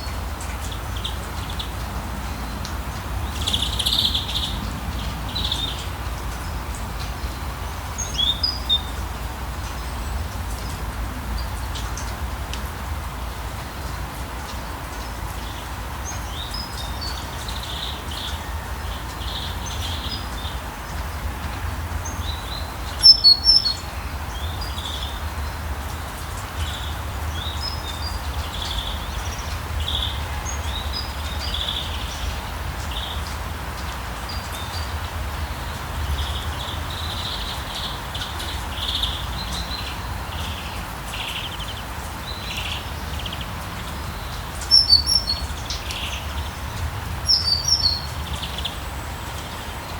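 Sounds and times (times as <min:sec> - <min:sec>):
birds chirping: 0:00.0 - 0:10.8, 0:14.5 - 0:49.9
steady rain: 0:00.0 - 0:49.9.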